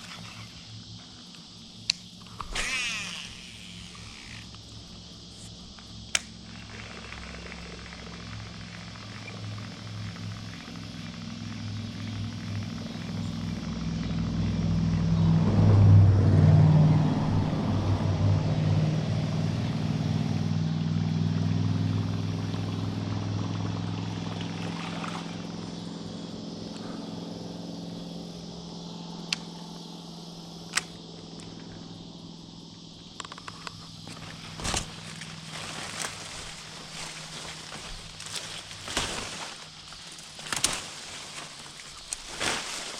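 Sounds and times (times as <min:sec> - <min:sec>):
sharp clicks: 0:05.7 - 0:08.4, 0:30.7 - 0:31.5
motor engine running: 0:05.9 - 0:32.3, 0:33.8 - 0:42.6.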